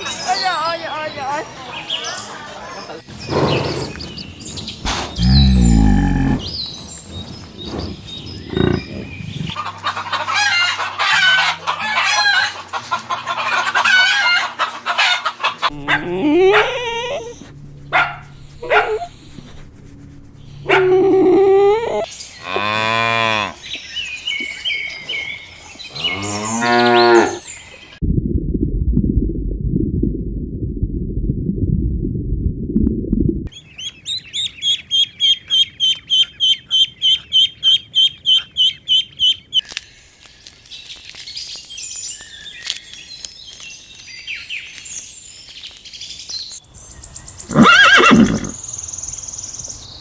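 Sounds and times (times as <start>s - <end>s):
poultry chirping and clucking: 1.8s - 22.1s, 33.5s - 39.6s
cow mooing: 5.2s - 6.5s, 8.5s - 8.9s, 15.7s - 23.6s, 26.0s - 27.4s.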